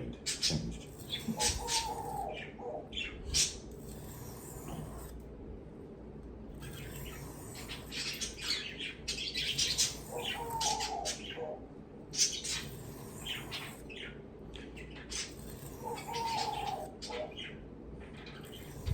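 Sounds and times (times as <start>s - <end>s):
knife scraping on abrasive: 3.4s - 5.2s, 6.6s - 8.6s
bird chirping: 12.2s - 18.9s.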